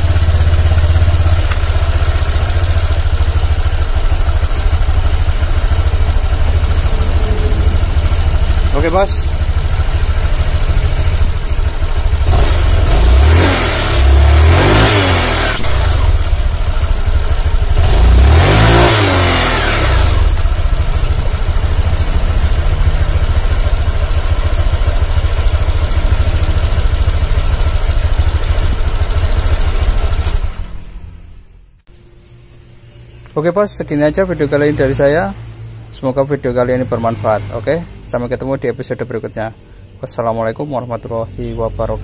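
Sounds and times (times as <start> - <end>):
scooter engine revving: 0.0 - 31.6.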